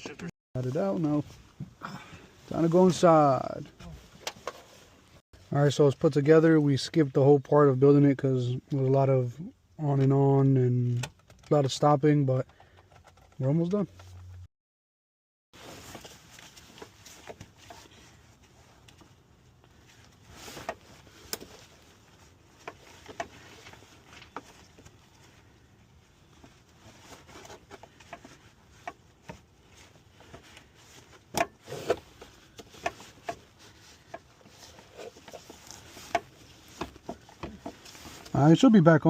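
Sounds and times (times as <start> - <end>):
clicks and knocks of metal parts: 12.4 - 13.4.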